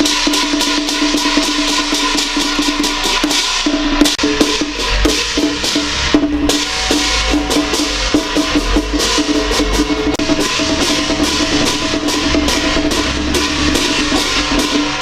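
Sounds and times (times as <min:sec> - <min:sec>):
cymbal crashes: 0:00.0 - 0:15.0
drum strokes: 0:00.0 - 0:15.0
low rumble: 0:04.2 - 0:15.0.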